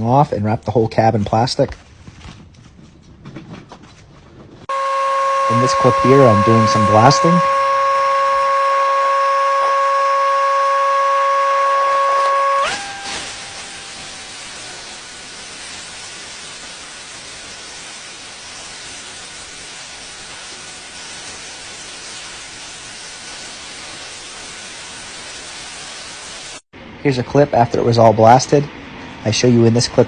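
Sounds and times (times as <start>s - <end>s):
loud steady whistle: 4.7s - 15.4s
sandblaster hissing: 4.7s - 26.6s.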